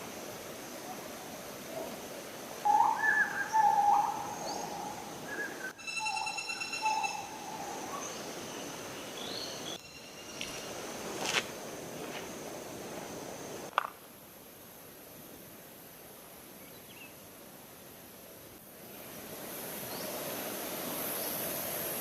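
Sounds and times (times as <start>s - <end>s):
background hiss: 0.0s - 22.0s
steady high-pitched tone: 5.8s - 8.8s, 9.7s - 11.3s.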